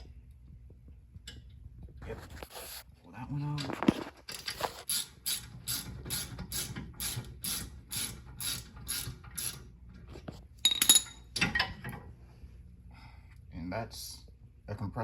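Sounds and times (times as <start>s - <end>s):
hand ratchet clicking: 4.9s - 9.6s.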